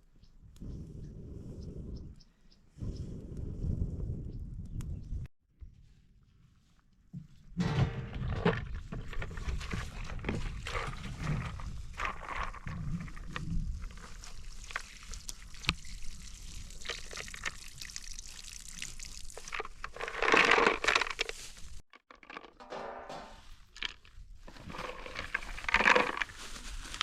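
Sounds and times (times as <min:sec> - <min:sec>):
water pouring and splashing: 0:09.1 - 0:21.5, 0:24.5 - 0:27.0.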